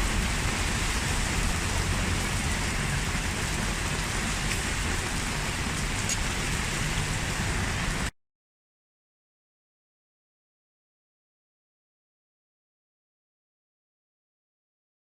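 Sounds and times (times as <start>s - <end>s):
low rumble: 0.0s - 8.1s
rain falling: 0.0s - 8.1s.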